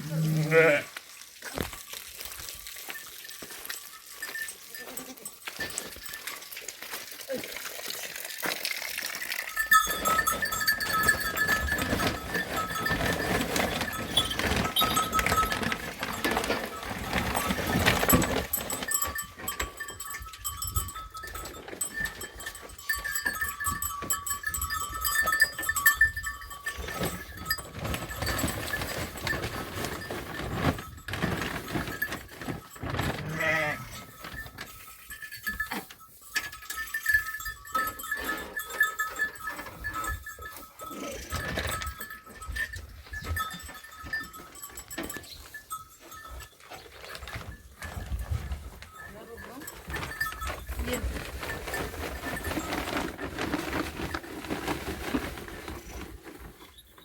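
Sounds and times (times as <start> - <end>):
sheep bleating: 0.0 - 1.0, 33.2 - 34.0
rustling: 9.1 - 57.0.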